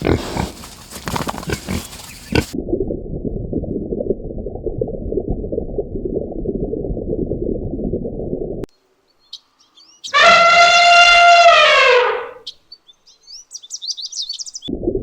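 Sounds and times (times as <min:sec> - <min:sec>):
drawn-out animal call: 0:10.1 - 0:12.5.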